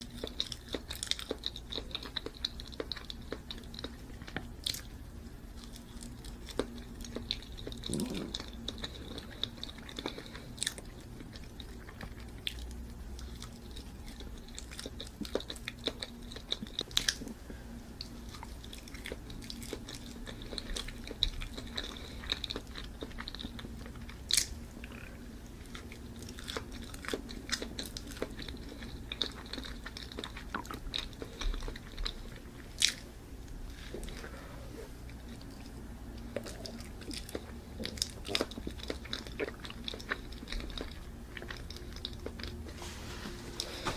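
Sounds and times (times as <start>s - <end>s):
faint steady hum: 0.0s - 43.9s
person chewing food: 0.0s - 43.9s.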